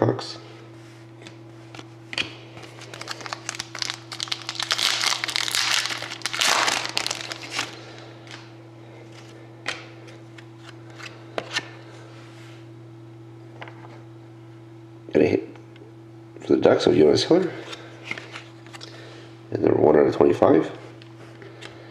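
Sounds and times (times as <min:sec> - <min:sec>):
steady low hum: 0:00.0 - 0:21.9
foil wrapper tearing and crinkling: 0:02.8 - 0:08.4.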